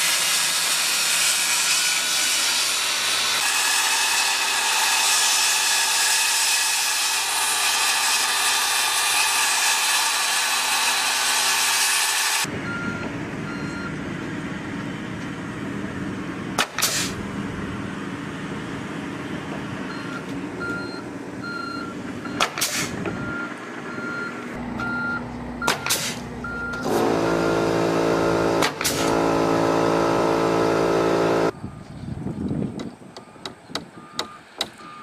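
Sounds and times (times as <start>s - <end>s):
heavy construction vehicle engine: 0.0s - 6.0s, 7.1s - 31.9s, 33.0s - 35.0s
reversing alarm beeping: 12.6s - 14.0s, 19.9s - 22.5s, 23.1s - 25.8s, 26.4s - 27.7s, 33.2s - 35.0s.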